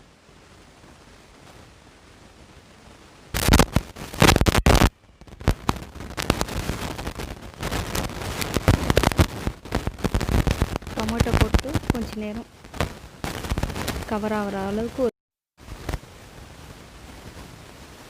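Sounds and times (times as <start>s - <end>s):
food sizzling in hot oil: 3.4s - 14.6s.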